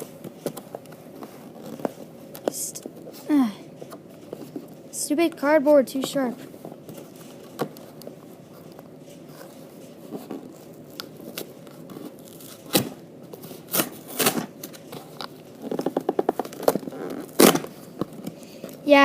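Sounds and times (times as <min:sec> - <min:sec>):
tape ripping: 0:06.9 - 0:18.3
cardboard box tearing open: 0:16.4 - 0:17.8.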